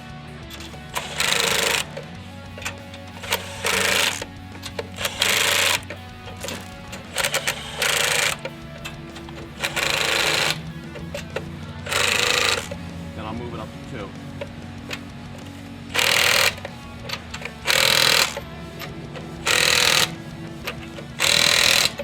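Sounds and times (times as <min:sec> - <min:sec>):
background music: 0:00.0 - 0:22.0
impact wrench hammering: 0:00.9 - 0:01.9, 0:03.2 - 0:04.3, 0:05.0 - 0:05.9, 0:06.5 - 0:08.4, 0:09.5 - 0:10.6, 0:11.8 - 0:12.8, 0:15.9 - 0:18.4, 0:19.4 - 0:22.0.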